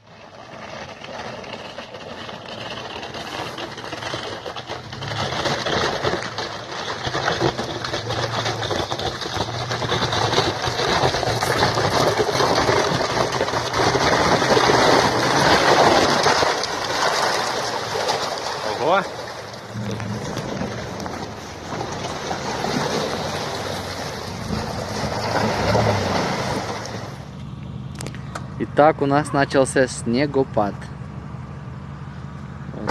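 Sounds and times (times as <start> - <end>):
low engine hum: 0.0 - 32.9
tyre and road noise: 0.0 - 32.9.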